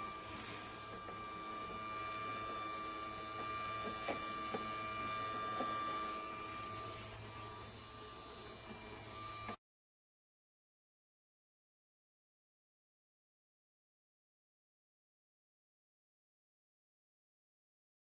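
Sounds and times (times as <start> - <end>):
ice cream maker humming: 0.0 - 9.6.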